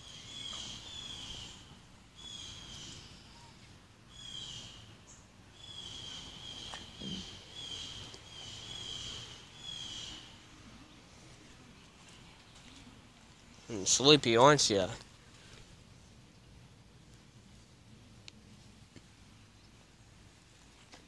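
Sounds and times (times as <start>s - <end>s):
small bird chirping trills: 0.0s - 11.1s.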